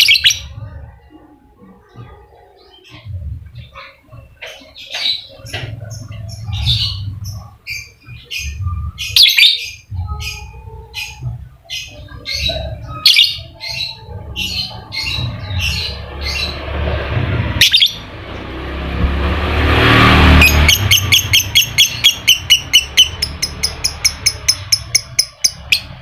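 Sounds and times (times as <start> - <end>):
low rumble: 12.6 - 20.4
bird squawking chirps: 20.4 - 25.9.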